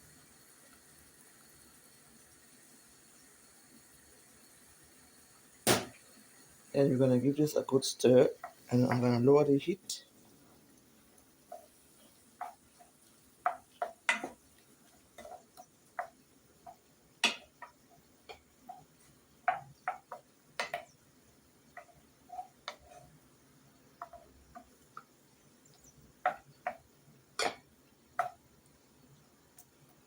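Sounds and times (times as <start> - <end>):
spoon knocking against cooking pot: 13.4 - 14.4, 16.0 - 18.8, 19.4 - 20.9, 26.2 - 28.4.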